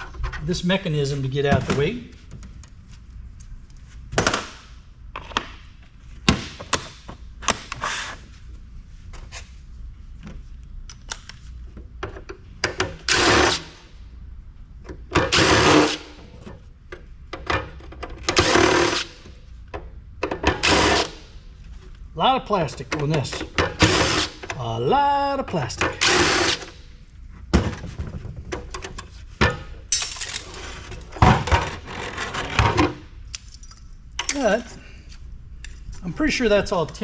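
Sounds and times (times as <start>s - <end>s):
clicks of parts being handled: 10.8s - 11.4s
power tool bursts: 15.3s - 16.0s, 23.8s - 24.4s, 26.0s - 26.7s.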